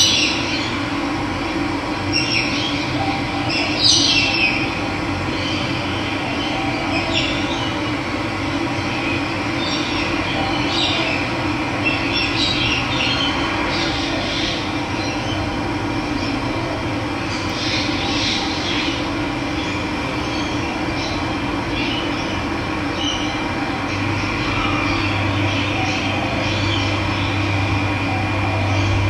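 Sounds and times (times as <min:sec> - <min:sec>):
birds chirping: 0:17.2 - 0:29.0.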